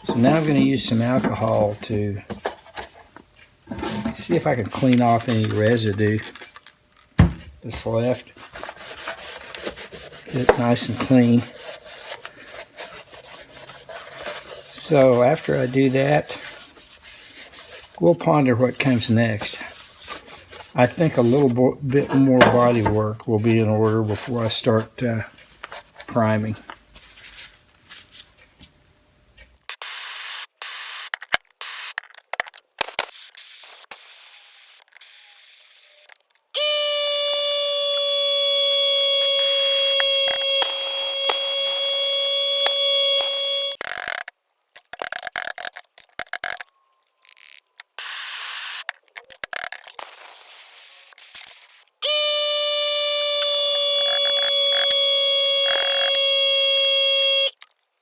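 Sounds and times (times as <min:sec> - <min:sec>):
metal scraping and knocking: 0:22.0 - 0:23.1
power tool whining: 0:36.6 - 0:43.9, 0:52.0 - 0:57.6.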